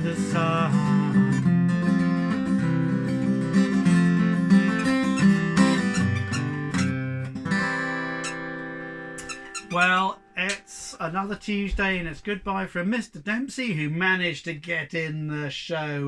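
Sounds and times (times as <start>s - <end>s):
acoustic guitar strumming: 0.0s - 12.8s.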